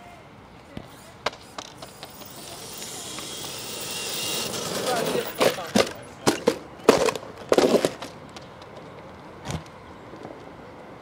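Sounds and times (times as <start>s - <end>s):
toy truck knocking and clattering: 1.6s - 8.2s.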